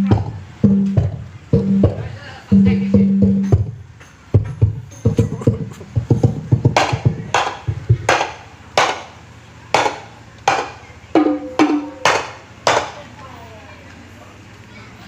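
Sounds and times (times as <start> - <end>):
deep drum tone: 0.0 - 8.3, 11.2 - 12.4
percussion strikes over sound system: 0.0 - 13.1.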